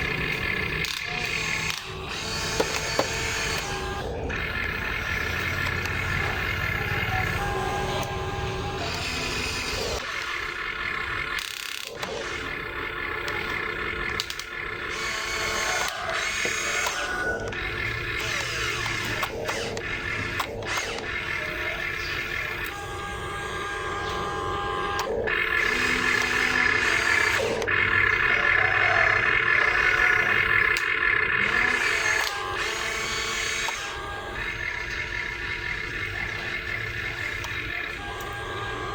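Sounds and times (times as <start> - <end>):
mechanical clicks: 0.0 - 38.9
toy gear motors whirring: 0.0 - 38.9.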